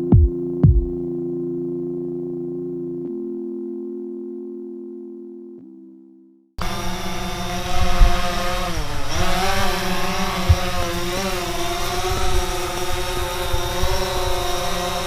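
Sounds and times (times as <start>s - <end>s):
low thumps: 0.0s - 1.1s
drone propellers buzzing and whining: 6.6s - 15.0s.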